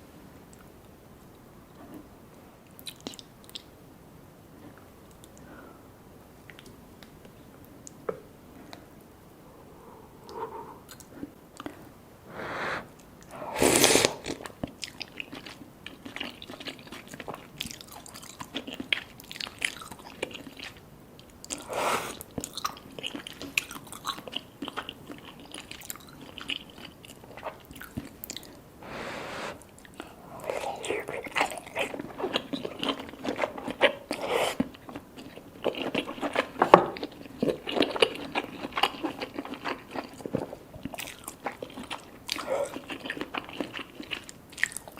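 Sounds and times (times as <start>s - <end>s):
chewing with mouth smacks: 2.8s - 3.7s, 14.1s - 28.6s, 29.6s - 44.9s.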